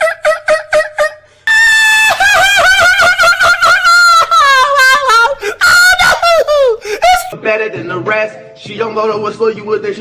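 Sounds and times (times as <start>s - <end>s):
man falsetto squeal: 1.0s - 7.4s
man yelping squeakily: 5.4s - 7.4s.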